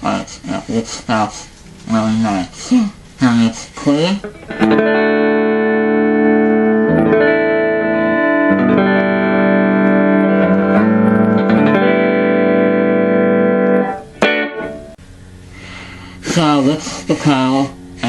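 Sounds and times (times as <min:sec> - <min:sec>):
electric guitar chords: 0:01.6 - 0:02.0, 0:04.2 - 0:16.2.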